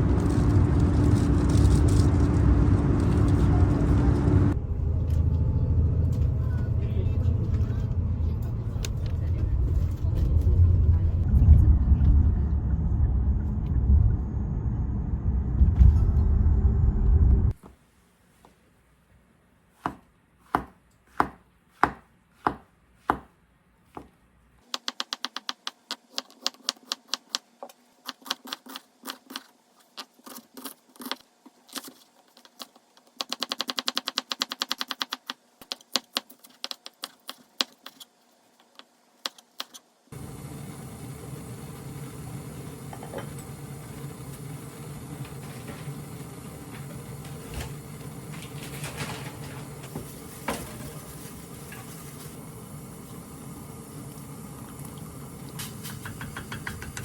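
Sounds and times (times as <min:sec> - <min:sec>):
whirring noise with low hum: 0:00.0 - 0:17.8
knife chopping on cutting board: 0:19.8 - 0:24.1.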